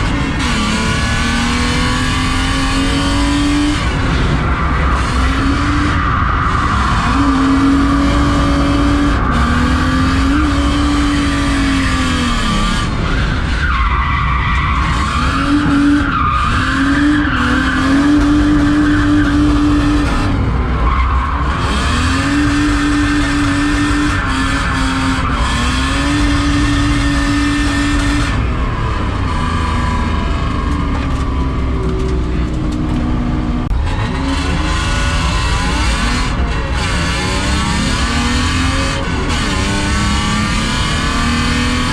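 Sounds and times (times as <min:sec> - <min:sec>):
tyres squealing and skidding: 0:00.0 - 0:32.4
car engine at high revs: 0:00.0 - 0:41.9.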